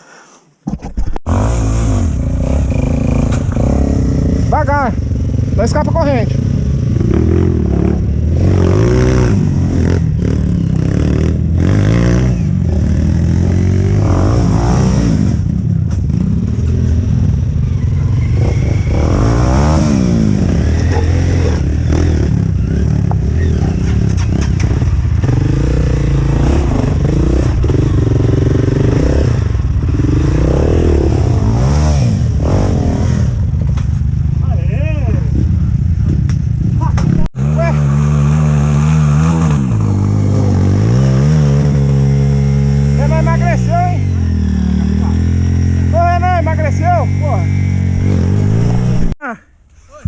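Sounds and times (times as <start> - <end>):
dirt bike engine revving: 1.3 - 49.2
bike clattering and scraping: 20.4 - 25.9.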